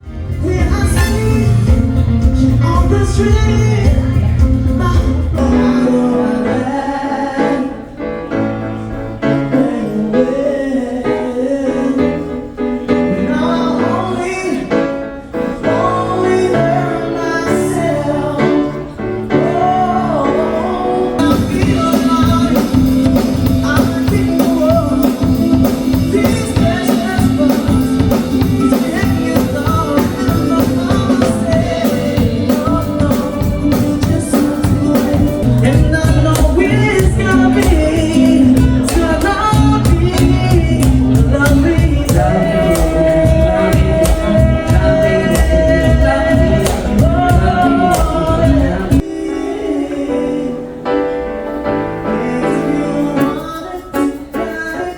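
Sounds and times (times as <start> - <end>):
steady drum beat: 0.0 - 5.4, 21.2 - 49.1
band playing: 0.0 - 54.9
person singing lead vocal: 0.0 - 54.9.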